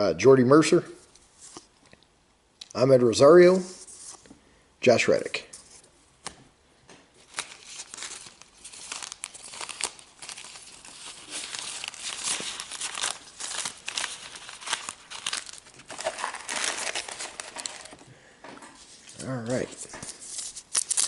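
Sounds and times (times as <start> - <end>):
wrapper crinkling and tearing: 7.2 - 18.0, 18.8 - 21.0.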